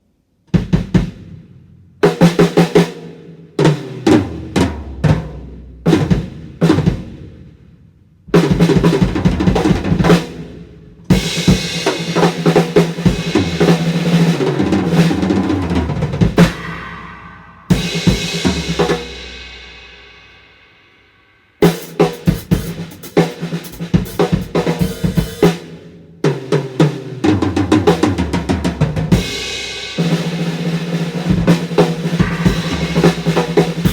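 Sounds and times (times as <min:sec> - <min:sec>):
drums struck: 0:11.1 - 0:19.9, 0:21.6 - 0:25.6, 0:27.8 - 0:33.9
cymbal crash: 0:16.3 - 0:21.4, 0:32.0 - 0:33.9.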